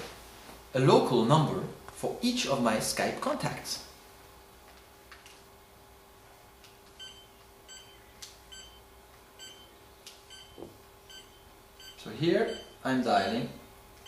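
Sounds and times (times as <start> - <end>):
phone keypad beeps: 7.0 - 8.8, 9.4 - 9.7, 10.3 - 12.8.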